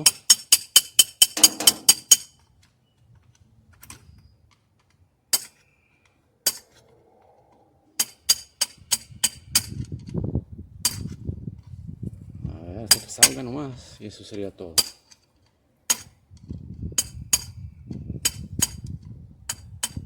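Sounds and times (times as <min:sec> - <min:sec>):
metal tool tapping metal clip: 0:00.0 - 0:02.3, 0:14.8 - 0:15.2.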